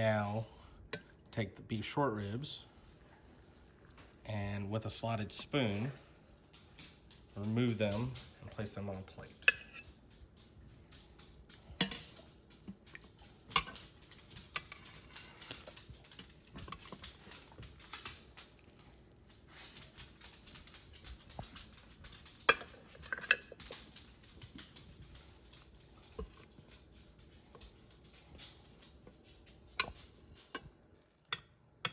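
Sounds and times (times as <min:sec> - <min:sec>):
metal spoon scraping a pot: 0:09.4 - 0:09.9, 0:11.8 - 0:13.8, 0:14.5 - 0:15.8, 0:22.5 - 0:23.6.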